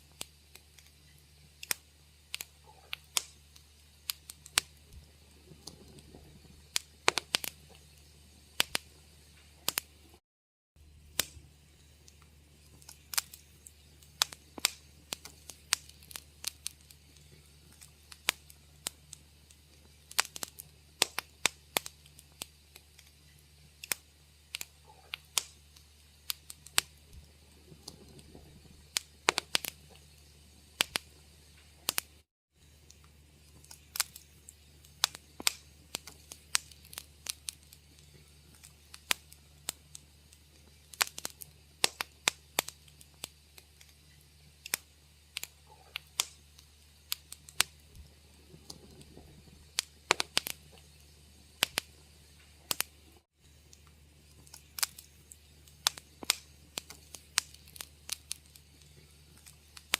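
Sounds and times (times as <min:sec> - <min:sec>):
faint low hum: 0:00.0 - 0:10.2, 0:10.8 - 0:59.9
wood fire crackling: 0:00.0 - 0:10.2, 0:10.8 - 0:59.9.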